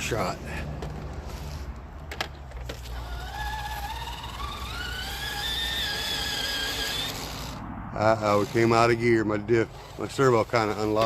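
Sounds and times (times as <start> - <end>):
electric motor whining: 2.5 - 11.0.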